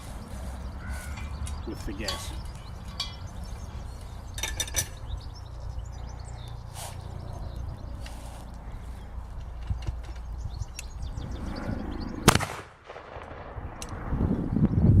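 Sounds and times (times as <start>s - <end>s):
gas cannon bang: 12.3s - 13.4s.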